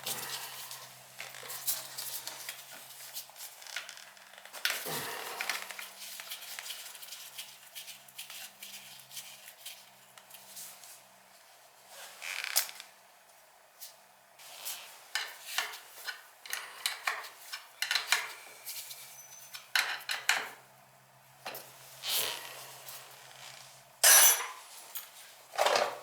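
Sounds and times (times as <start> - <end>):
metal tools clicking and clattering: 24.0 - 25.1.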